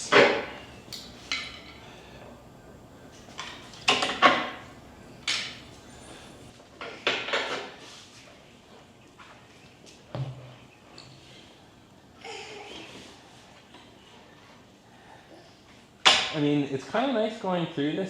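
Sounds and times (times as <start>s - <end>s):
metal clanks and knocks: 0.0s - 1.9s.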